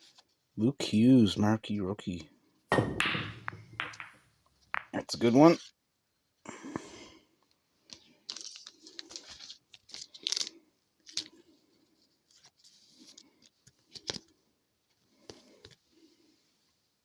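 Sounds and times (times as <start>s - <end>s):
cards rustling and shuffling: 7.9s - 11.4s.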